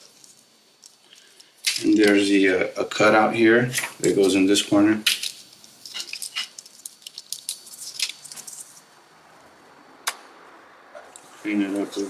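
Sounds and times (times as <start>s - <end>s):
plastic sheet rustling: 3.7s - 9.0s.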